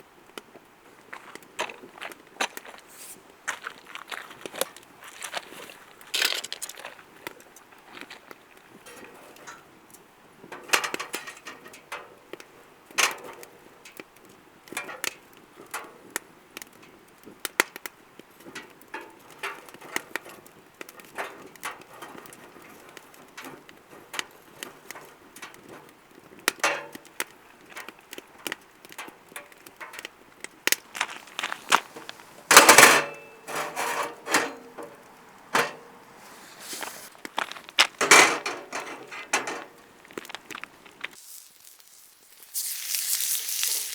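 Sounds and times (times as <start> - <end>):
low fire hiss: 0.0 - 43.9
firewood crackling and popping: 0.1 - 43.9.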